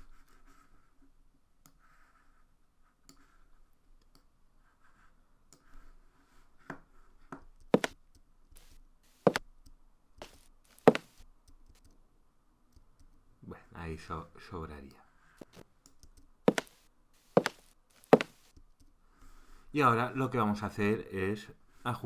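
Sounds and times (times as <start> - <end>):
footsteps on a hard floor: 7.8 - 8.0, 9.2 - 9.4, 10.2 - 11.2, 16.5 - 18.5.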